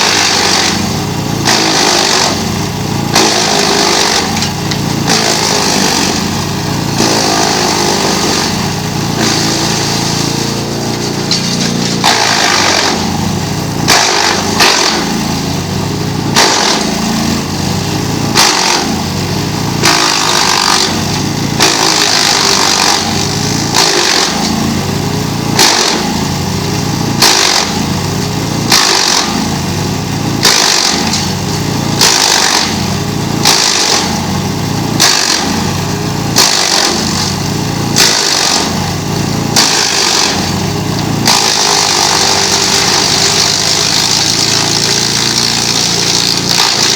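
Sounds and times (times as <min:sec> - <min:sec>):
wood chipper engine: 0:00.0 - 0:46.9
wood cracking: 0:10.8 - 0:13.2, 0:18.3 - 0:24.7.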